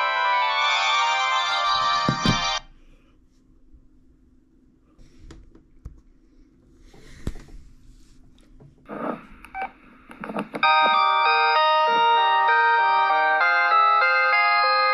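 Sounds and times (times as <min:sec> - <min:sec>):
polyphonic cell phone ringtone: 0:00.0 - 0:02.6, 0:10.6 - 0:14.9.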